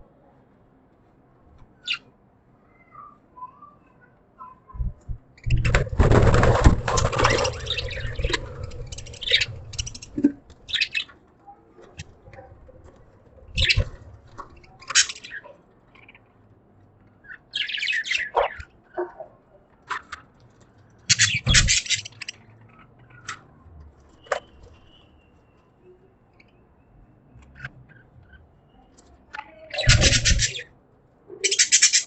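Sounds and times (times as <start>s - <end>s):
loud rustling: 5.5s - 10.5s
budgerigars chirping: 7.0s - 11.1s, 13.6s - 14.0s, 14.6s - 16.2s, 21.1s - 23.4s, 29.7s - 30.6s, 31.4s - 32.0s.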